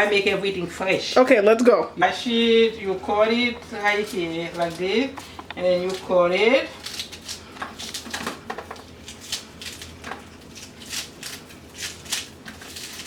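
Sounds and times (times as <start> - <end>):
steady low hum: 0.0 - 13.0
knife cutting vegetables: 6.8 - 13.0.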